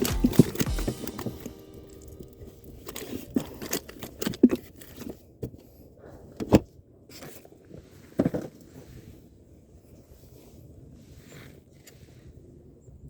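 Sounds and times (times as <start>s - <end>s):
objects being handled: 0.0s - 5.6s.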